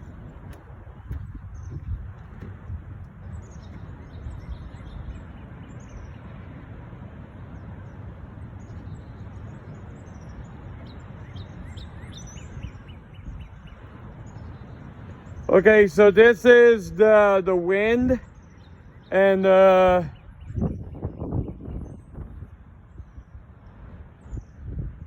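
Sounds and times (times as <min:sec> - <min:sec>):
birds chirping: 0:00.0 - 0:06.6, 0:07.4 - 0:24.8
wind gusting: 0:00.0 - 0:06.8, 0:12.4 - 0:18.3, 0:19.2 - 0:25.0
wind rumbling on microphone: 0:00.0 - 0:25.0.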